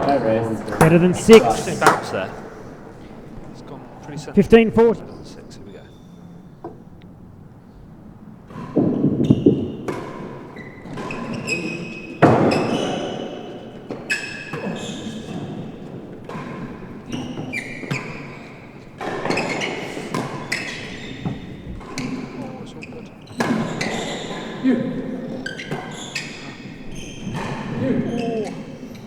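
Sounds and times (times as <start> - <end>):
ball struck by racquets: 0.6 - 3.6, 8.4 - 28.6
ball bouncing off floor and walls: 0.7 - 3.6, 8.5 - 29.0.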